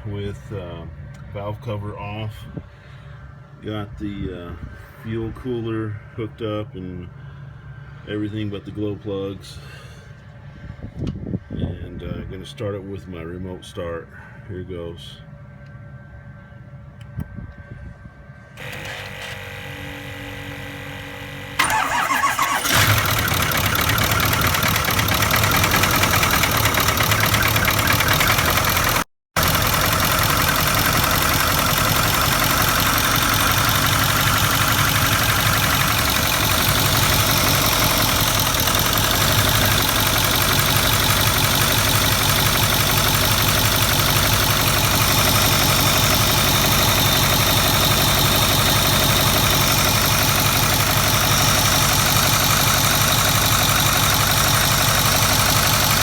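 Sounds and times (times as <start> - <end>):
diesel engine cranking: 18.6 - 56.0
diesel engine idling: 18.6 - 56.0
engine starter whirring: 18.6 - 56.0.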